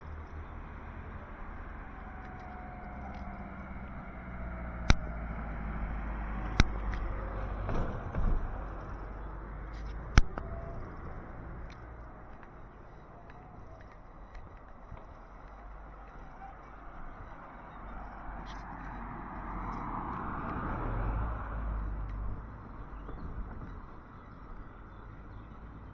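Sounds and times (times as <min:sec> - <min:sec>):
vehicle rumble: 0:00.0 - 0:25.9
sharp clicks: 0:04.7 - 0:07.6, 0:08.8 - 0:15.6.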